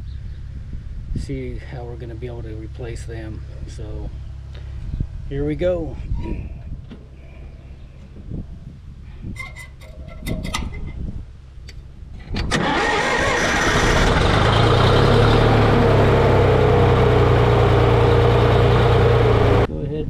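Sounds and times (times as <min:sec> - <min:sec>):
diesel engine idling: 0:12.6 - 0:19.7.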